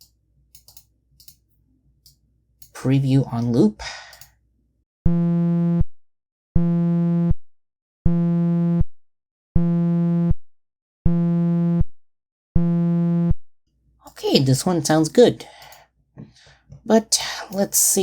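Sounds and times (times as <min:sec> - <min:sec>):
synthesized low buzzing pulses: 0:05.1 - 0:05.9, 0:06.6 - 0:07.4, 0:08.1 - 0:08.9, 0:09.6 - 0:10.4, 0:11.1 - 0:11.9, 0:12.6 - 0:13.4.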